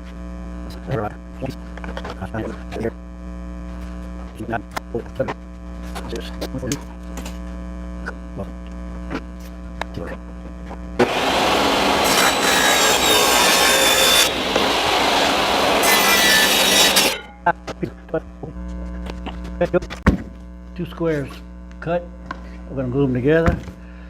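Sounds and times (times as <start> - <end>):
steady electrical hum: 10.4 - 19.6
saw cutting plexiglass: 11.0 - 17.3.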